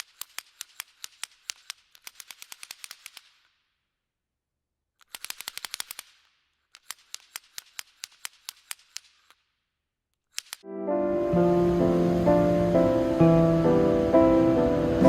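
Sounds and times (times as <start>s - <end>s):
rapid sharp clicks: 0.0s - 3.6s, 5.0s - 9.5s, 10.2s - 10.7s.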